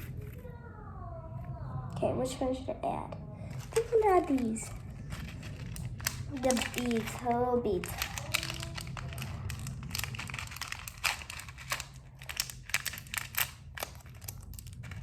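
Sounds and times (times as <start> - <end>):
plastic crinkling and clicking: 3.5 - 15.0.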